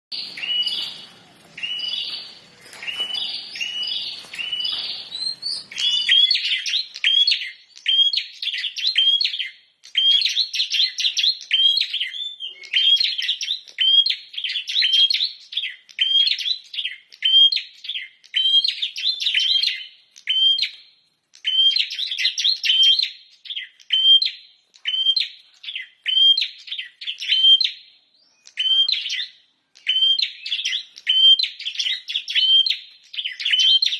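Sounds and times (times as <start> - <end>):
bird chirping and chattering: 0.1 - 7.9.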